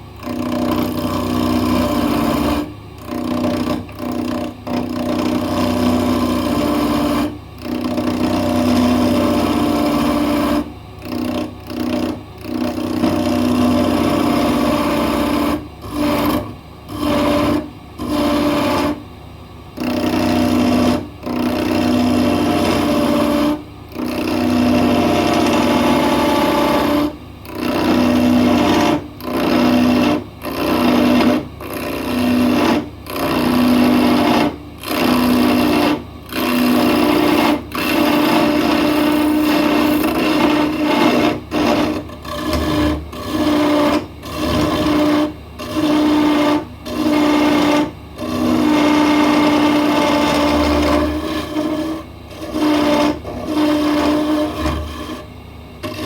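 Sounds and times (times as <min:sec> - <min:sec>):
electric woodworking tool running: 0:00.0 - 0:19.0, 0:19.7 - 0:56.0.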